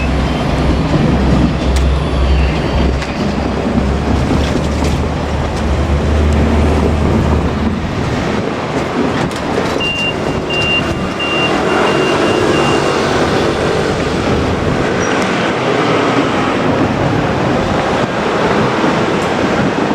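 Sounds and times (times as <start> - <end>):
low engine hum: 0.0 - 19.8
traffic rumble: 0.0 - 19.9
short high beeps: 9.8 - 13.1.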